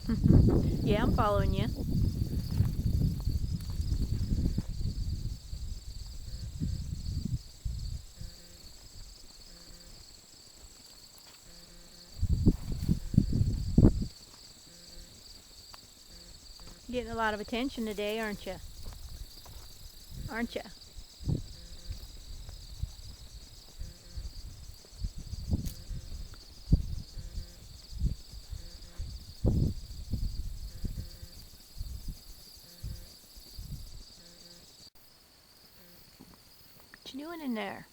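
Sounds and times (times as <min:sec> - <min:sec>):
low rumbling bumps: 0:00.0 - 0:08.2
crickets chirring: 0:00.0 - 0:37.9
insects trilling: 0:00.0 - 0:37.9.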